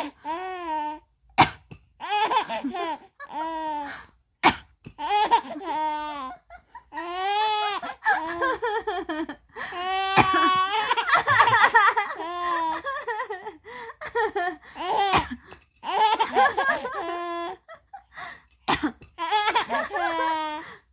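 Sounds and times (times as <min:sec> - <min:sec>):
baby giggling: 0:02.0 - 0:03.8, 0:04.9 - 0:08.7, 0:09.8 - 0:13.3, 0:14.8 - 0:17.7, 0:18.7 - 0:20.7
woman coughing: 0:10.2 - 0:10.6, 0:15.1 - 0:15.4, 0:18.7 - 0:20.4.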